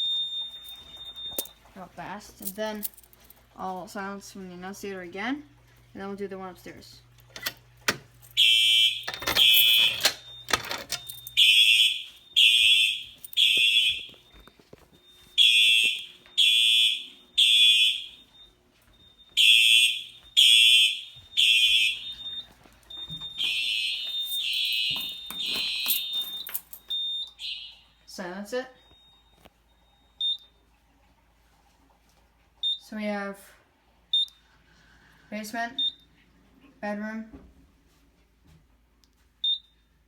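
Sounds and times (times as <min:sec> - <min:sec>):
fire alarm horn blasts: 0:00.0 - 0:01.7, 0:08.3 - 0:30.5.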